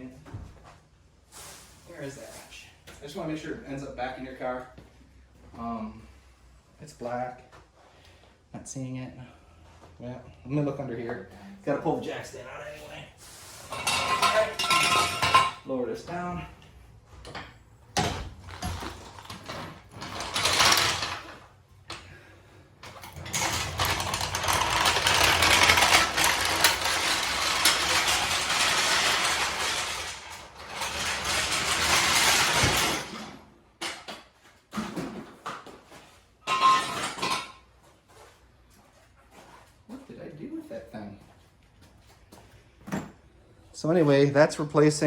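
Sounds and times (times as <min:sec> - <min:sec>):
car jack grinding and clicking: 0:22.8 - 0:34.1.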